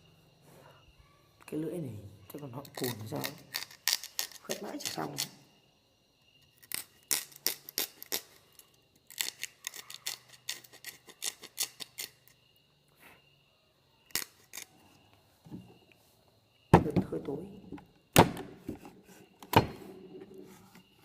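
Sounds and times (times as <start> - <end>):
knife scraping bamboo: 2.6 - 5.4, 6.6 - 12.4, 14.1 - 14.7.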